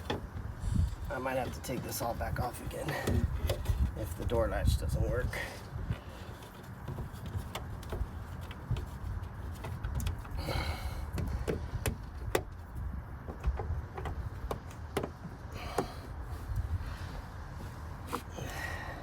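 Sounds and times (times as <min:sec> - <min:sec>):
car door parts clicking and knocking: 0:00.0 - 0:04.0, 0:05.9 - 0:16.2
scraping rustle: 0:00.0 - 0:18.5.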